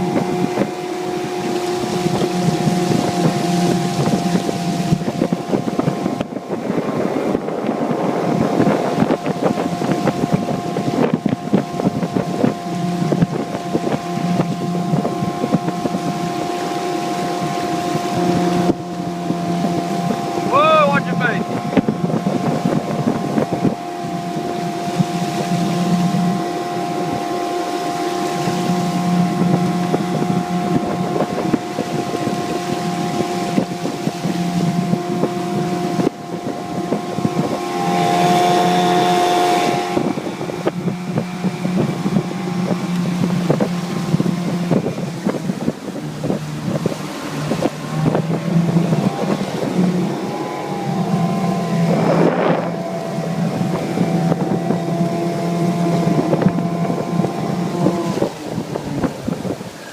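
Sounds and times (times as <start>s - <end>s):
outboard motor running: 0.0s - 59.9s
wind buffeting microphone: 0.0s - 59.9s.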